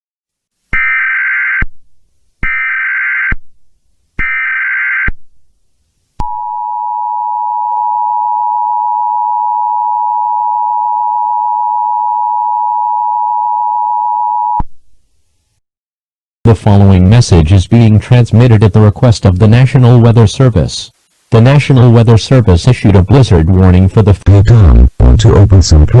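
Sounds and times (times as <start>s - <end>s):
screechy data tones: 0.8s - 1.6s, 2.4s - 3.3s, 4.2s - 5.1s.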